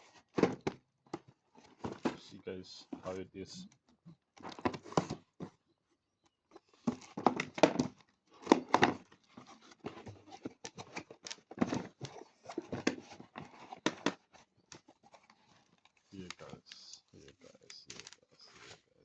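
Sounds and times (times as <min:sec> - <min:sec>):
plastic packaging clicks and rustles: 0:06.7 - 0:18.9.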